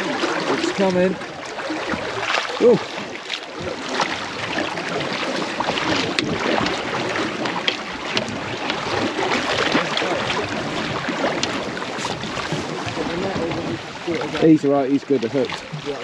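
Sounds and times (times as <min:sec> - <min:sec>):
water sloshing around boat: 0:00.0 - 0:16.0
wind on microphone: 0:03.6 - 0:14.6.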